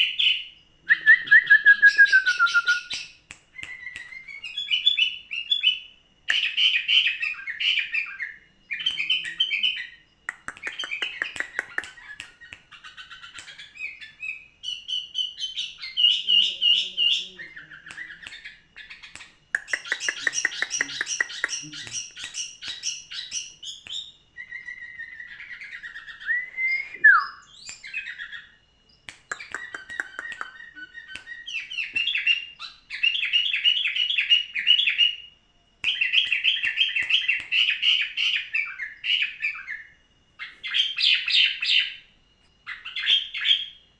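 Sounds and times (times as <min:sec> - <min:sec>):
songbird singing: 0:00.0 - 0:43.9
downward-sweeping whistle: 0:26.2 - 0:27.6.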